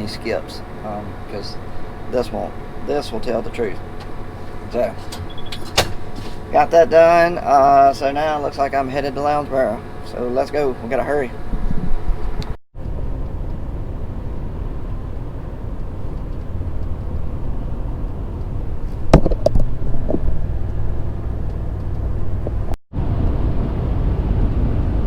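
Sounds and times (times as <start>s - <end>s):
vehicle engine and road rumble: 0.0s - 25.0s
sharp knocks: 4.9s - 6.5s, 19.0s - 20.3s.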